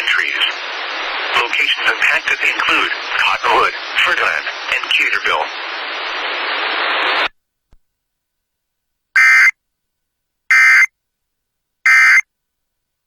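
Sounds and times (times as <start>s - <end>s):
screeching digital data tones: 9.2s - 9.5s, 10.5s - 10.9s, 11.9s - 12.2s.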